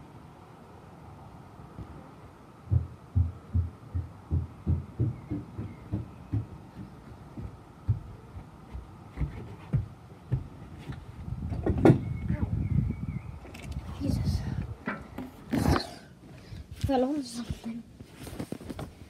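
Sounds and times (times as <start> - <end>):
low dull thuds: 1.7 - 12.9.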